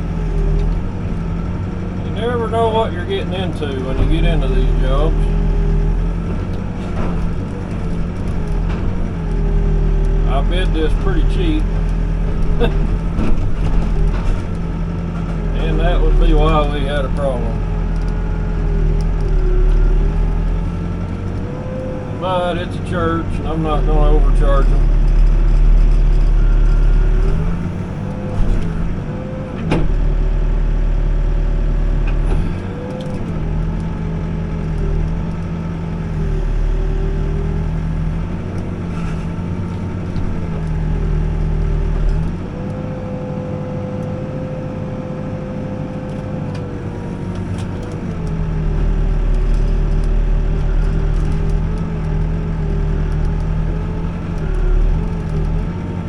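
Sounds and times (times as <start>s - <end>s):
backhoe diesel engine digging: 0.0s - 56.0s.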